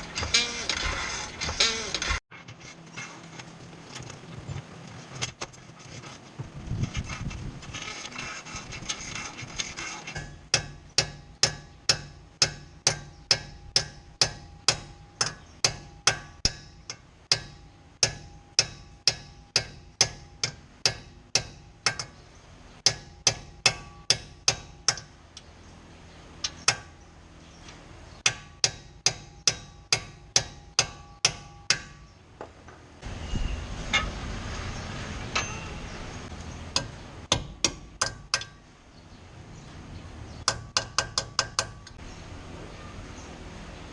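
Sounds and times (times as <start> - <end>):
hammer striking metal: 10.1 - 22.2, 22.8 - 25.2, 28.2 - 32.2, 35.2 - 38.6.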